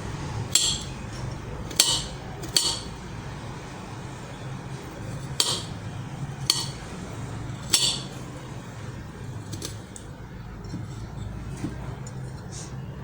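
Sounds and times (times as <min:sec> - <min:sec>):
steady low hum: 0:00.0 - 0:13.0
utensils clinking on dishes: 0:00.4 - 0:03.1, 0:05.0 - 0:08.5.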